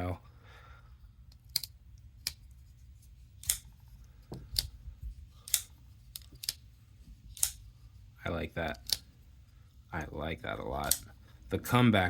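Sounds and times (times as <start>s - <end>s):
folding knife clicking: 3.4s - 3.7s, 7.4s - 7.6s, 10.8s - 11.1s.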